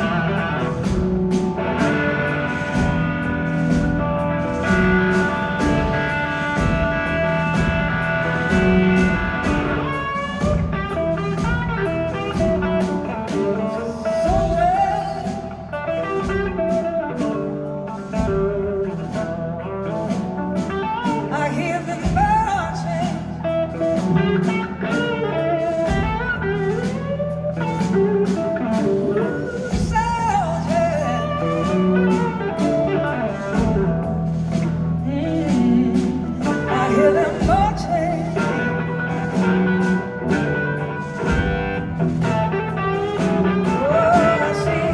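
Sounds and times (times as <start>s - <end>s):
blues rock band playing: 0.0s - 44.9s
electric guitar lead: 0.0s - 44.9s.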